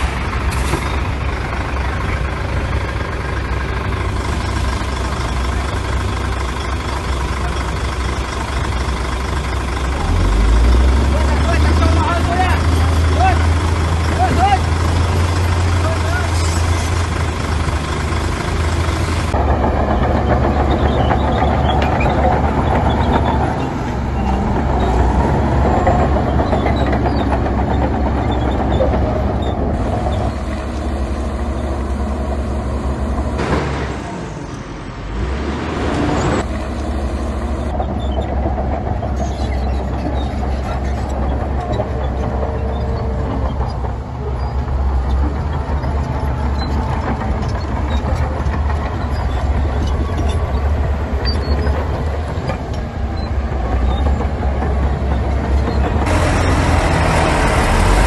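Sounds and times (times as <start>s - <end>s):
diesel machinery engine rumble: 0.0s - 58.0s.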